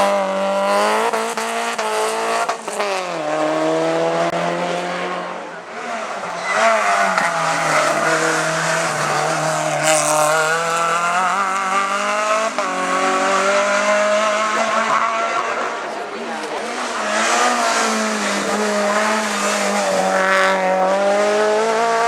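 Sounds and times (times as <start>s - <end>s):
race car engine accelerating: 0.0s - 22.0s.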